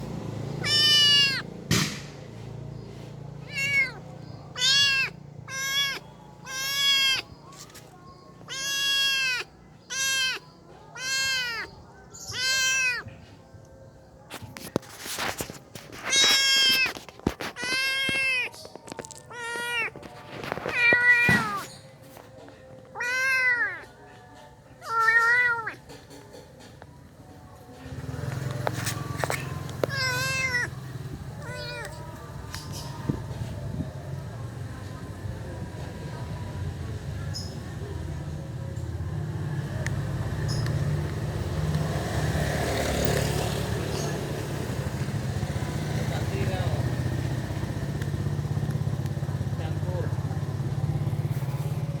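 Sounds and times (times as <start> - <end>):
kitten meowing: 0.6 - 1.4, 3.4 - 7.4, 8.4 - 13.1, 16.0 - 21.8, 22.9 - 23.9, 24.8 - 25.8, 29.1 - 33.0.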